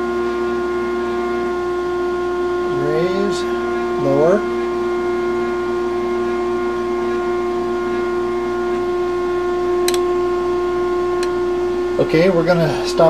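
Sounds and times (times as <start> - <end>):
cnc router whining: 0.0 - 13.0
sharp click: 9.8 - 10.1.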